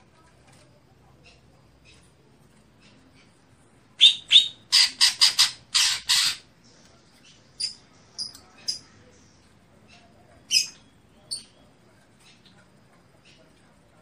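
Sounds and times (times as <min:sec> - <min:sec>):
bird harsh calls: 0:04.0 - 0:06.5
thin high bird chirps: 0:07.2 - 0:13.7.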